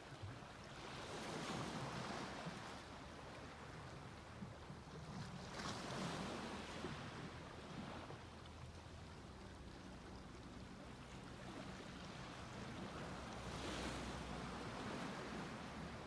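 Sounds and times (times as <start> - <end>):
small waves breaking on beach: 11.2 - 16.0.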